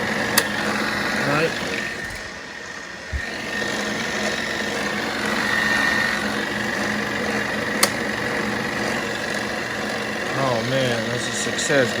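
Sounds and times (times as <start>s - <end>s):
movie projector whirring: 0.0s - 12.0s
sharp click: 0.3s - 0.7s, 7.7s - 8.1s.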